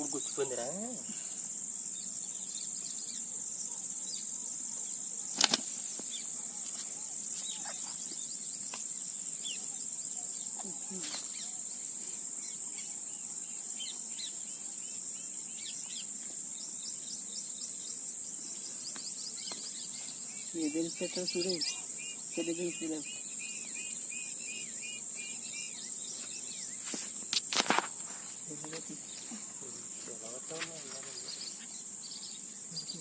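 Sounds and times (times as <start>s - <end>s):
insect chorus: 0.0s - 33.0s.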